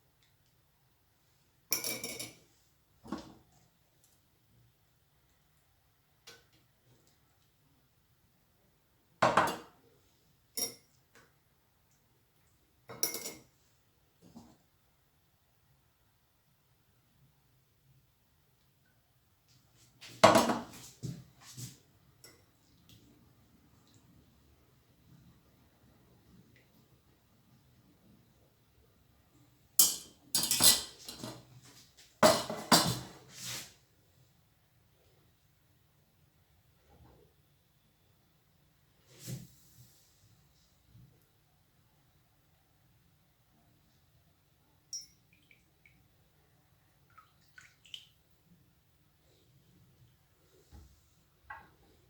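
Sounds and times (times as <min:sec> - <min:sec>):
kitchenware clinking and knocking: 0:29.8 - 0:31.4, 0:32.2 - 0:33.2.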